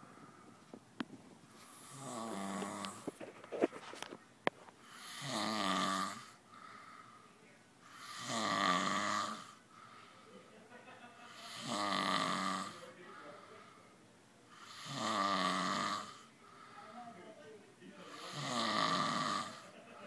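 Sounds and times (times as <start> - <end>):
person snoring: 1.7 - 3.2, 4.9 - 6.4, 7.9 - 9.6, 11.3 - 13.5, 14.5 - 16.3, 18.0 - 19.7.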